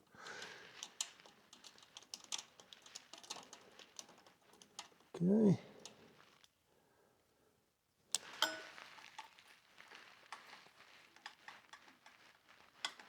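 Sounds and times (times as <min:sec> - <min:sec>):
light clicks and ticks: 0:00.1 - 0:06.6, 0:08.1 - 0:13.0.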